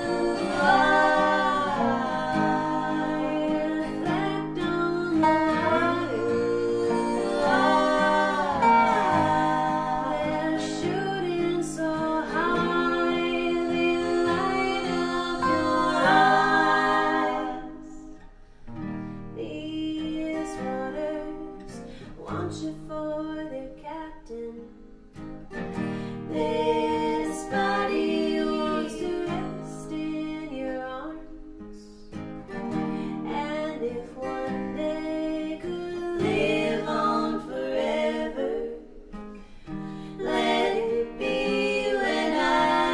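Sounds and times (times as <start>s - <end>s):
dobro notes: 0.0s - 18.3s
women singing in harmony: 0.0s - 18.3s, 19.4s - 24.7s, 26.0s - 42.9s
acoustic guitar: 0.0s - 42.9s.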